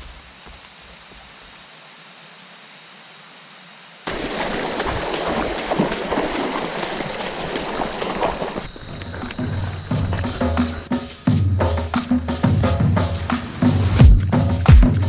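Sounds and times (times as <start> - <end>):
rushing river water: 0.2 - 10.6
water splashes and knocks: 4.1 - 8.6.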